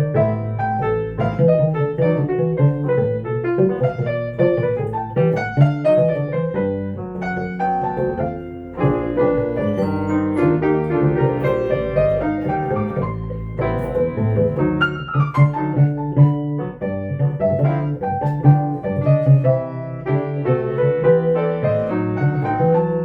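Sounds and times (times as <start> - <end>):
jazz piano chords: 0.0 - 23.0.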